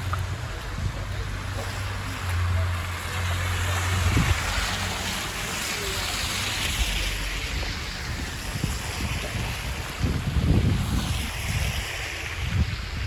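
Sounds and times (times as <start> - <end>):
snowy traffic noise: 0.0 - 13.0
wind rushing: 6.8 - 13.0.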